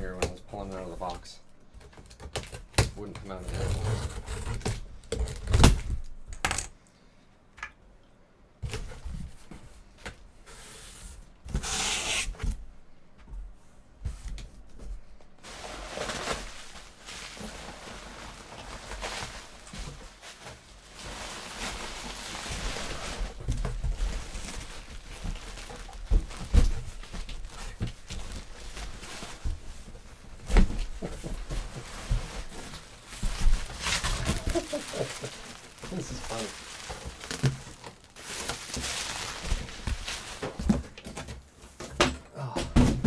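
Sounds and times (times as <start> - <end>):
wrapping rustling: 15.4 - 41.9
packaging knocks and clinks: 31.7 - 41.2.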